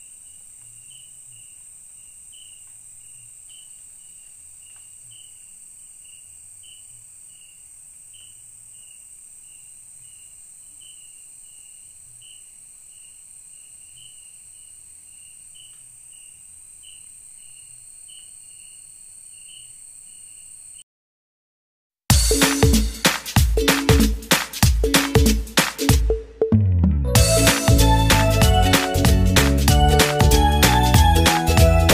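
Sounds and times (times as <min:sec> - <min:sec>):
insects chorus: 0:00.0 - 0:20.8
insect chirp: 0:00.0 - 0:20.9.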